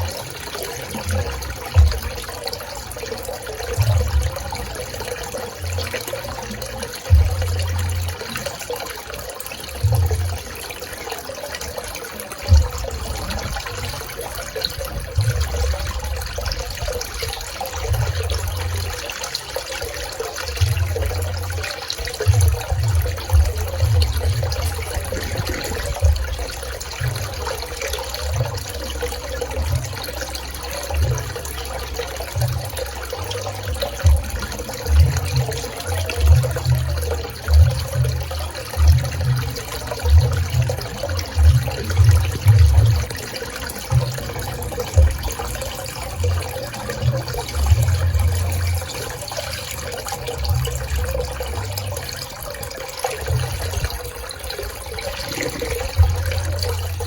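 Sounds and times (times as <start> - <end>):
pool water splashing: 0.0 - 57.0
low rumbles: 12.4 - 19.1, 19.9 - 57.0.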